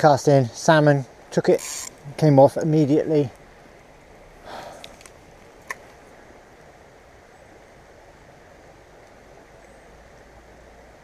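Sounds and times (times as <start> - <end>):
river water flowing: 0.0 - 11.0.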